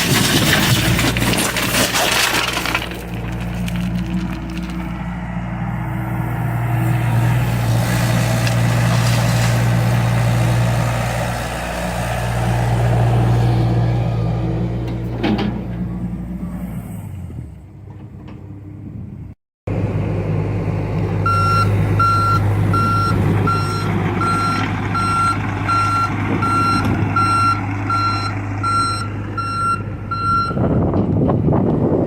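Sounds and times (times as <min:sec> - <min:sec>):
heavy diesel machine running: 0:00.0 - 0:32.0
backup alarm beeping: 0:21.3 - 0:30.6.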